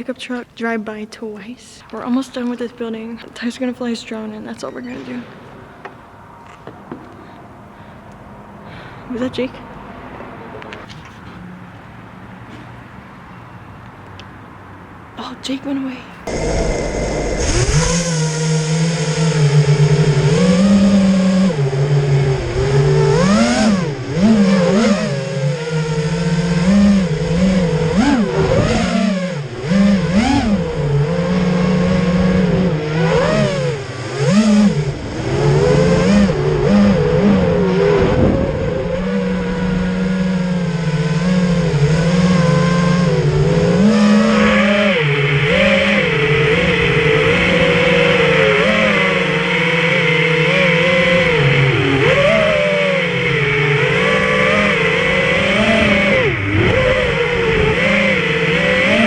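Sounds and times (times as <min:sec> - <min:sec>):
drone propellers buzzing: 0:16.2 - 0:59.0.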